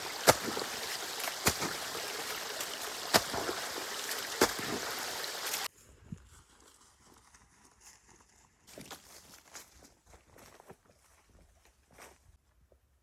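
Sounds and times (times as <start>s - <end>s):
water rushing down a channel: 0.0s - 5.7s.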